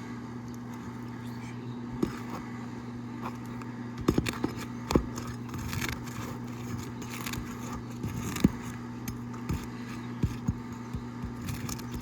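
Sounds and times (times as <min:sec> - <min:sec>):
steady low hum: 0:00.0 - 0:12.0
pry tool scraping shingles: 0:02.0 - 0:02.6, 0:03.2 - 0:12.0.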